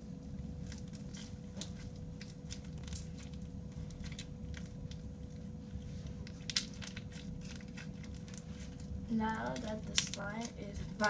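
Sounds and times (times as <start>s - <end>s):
slime squishing with crunchy clicks: 0.3s - 11.0s.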